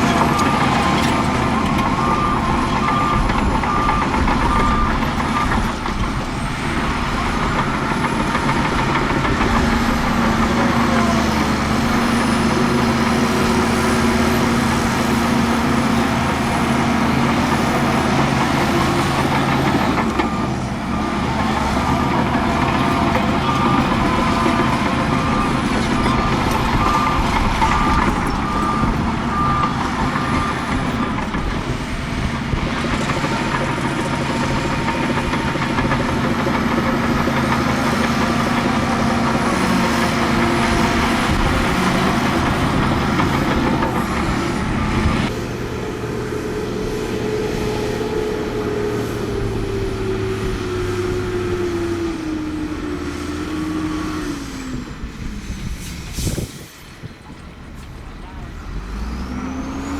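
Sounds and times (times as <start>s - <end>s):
reversing alarm beeping: 0.0s - 31.7s
heavy diesel machinery engine: 0.0s - 59.9s.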